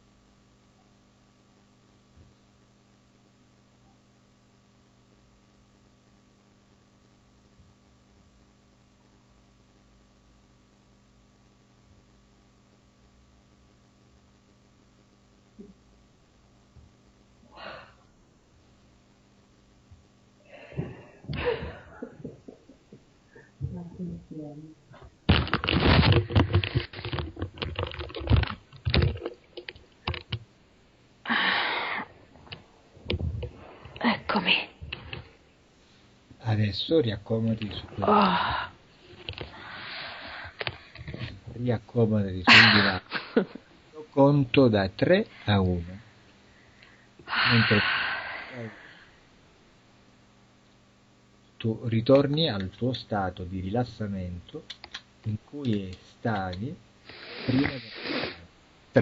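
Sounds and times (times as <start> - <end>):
faint low hum: 0.0 - 59.0
steady hiss: 55.3 - 59.0.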